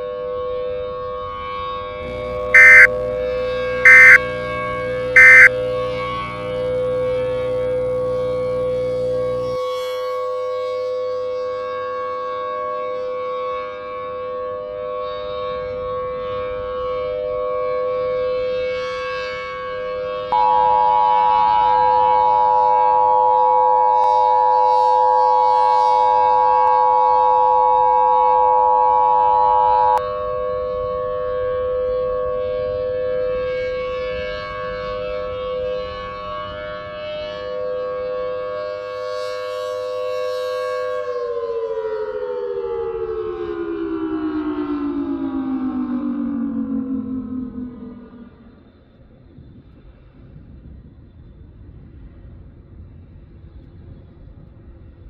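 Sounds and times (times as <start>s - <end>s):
civil defense siren: 0.0s - 49.7s
electronic two-tone beep: 2.6s - 2.9s, 3.9s - 4.2s, 5.2s - 5.5s.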